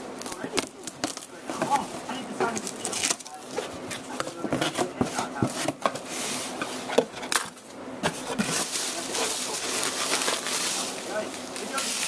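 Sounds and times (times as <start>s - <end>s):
packaging rustling: 8.2s - 12.0s.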